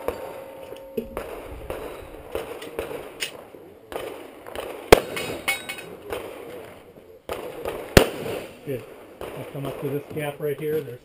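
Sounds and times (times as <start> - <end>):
pistol shot: 1.2 - 6.7, 7.3 - 9.8.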